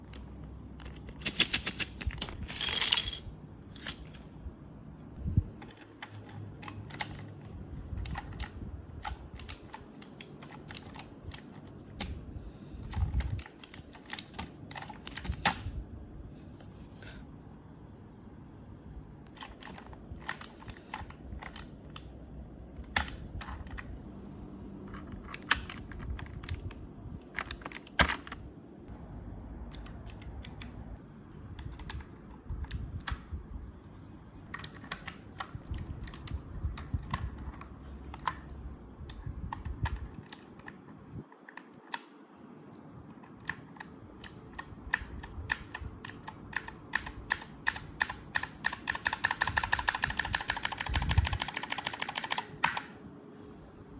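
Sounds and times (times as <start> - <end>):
low rumble of handling noise: 0.0 - 41.8
mechanical keyboard clicking: 0.8 - 3.2, 5.6 - 12.2, 12.8 - 15.8, 19.3 - 22.2, 22.8 - 24.1, 24.9 - 28.5, 31.6 - 33.3, 34.4 - 38.5, 43.2 - 53.0.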